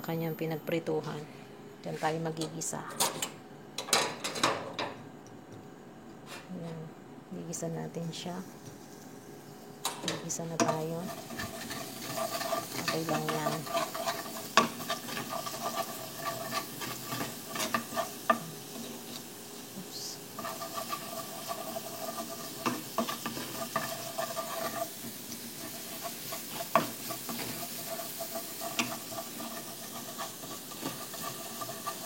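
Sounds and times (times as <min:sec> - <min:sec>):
food sizzling in oil: 0:08.1 - 0:32.0
utensil scraping pan: 0:10.0 - 0:19.3, 0:20.3 - 0:32.0.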